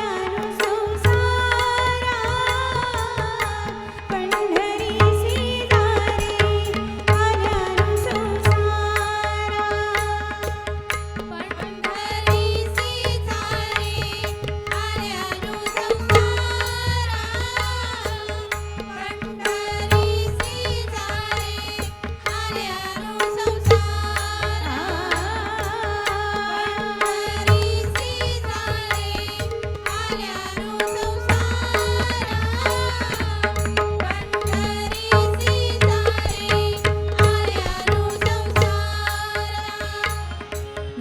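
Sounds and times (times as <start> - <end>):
tabla and pakhawaj drums: 0.0 - 41.0
woman singing ornamented melody: 0.0 - 41.0.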